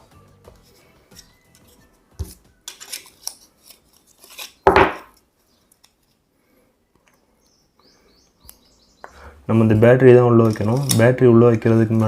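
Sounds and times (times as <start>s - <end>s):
plastic parts scraping and clicking: 1.2s - 6.2s, 10.4s - 11.2s
plastic parts clattering: 10.4s - 11.1s.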